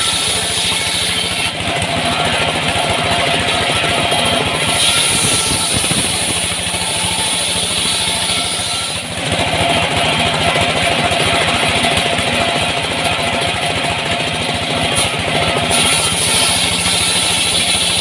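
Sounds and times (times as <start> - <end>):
engine-driven wood saw running: 0.0 - 18.0
high steady whine: 1.6 - 12.2.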